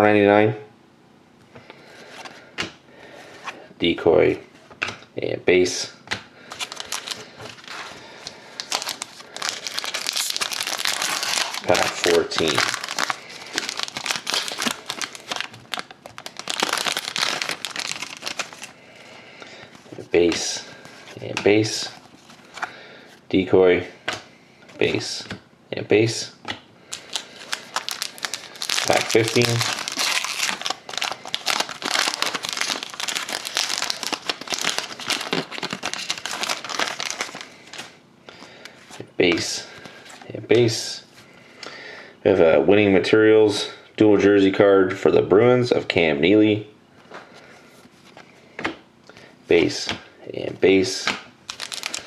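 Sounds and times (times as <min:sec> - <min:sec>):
plastic wrapper crinkling: 0:06.4 - 0:21.2, 0:26.9 - 0:38.0, 0:51.4 - 0:52.0.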